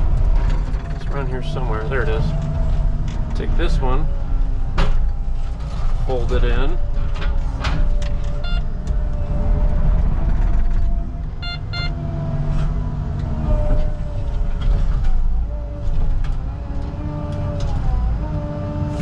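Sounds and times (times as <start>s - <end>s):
excavator diesel engine: 0.0s - 19.0s
metal knocks and creaks: 0.0s - 19.0s
high-pitched squeals or beeps: 8.4s - 8.6s.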